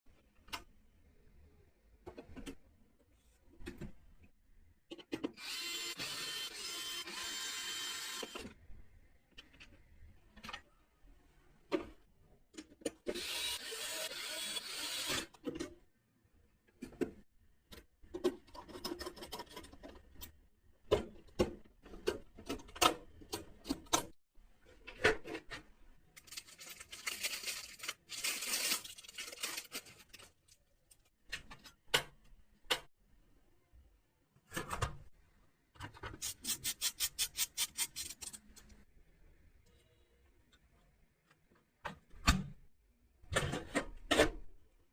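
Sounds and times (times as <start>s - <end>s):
computer parts rubbing and scraping: 36.0s - 38.8s.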